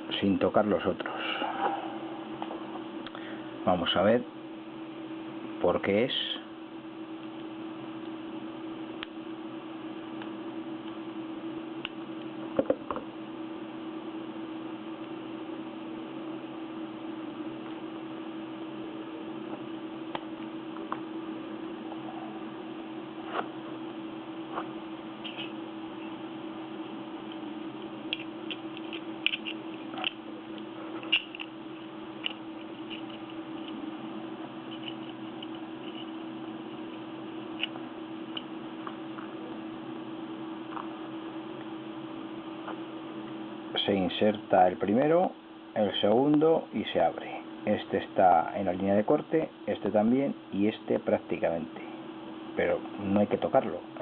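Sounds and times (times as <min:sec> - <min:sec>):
steady hum: 0:00.0 - 0:54.0.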